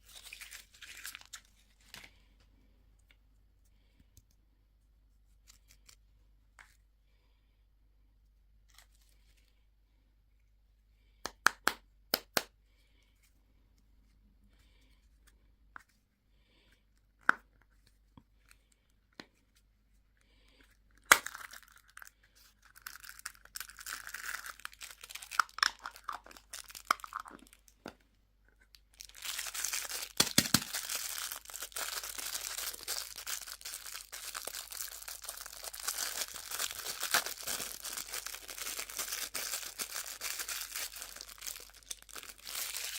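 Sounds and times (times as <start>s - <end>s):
wrappers crinkling and tearing: 0.0s - 2.2s, 21.1s - 27.5s, 28.9s - 42.9s.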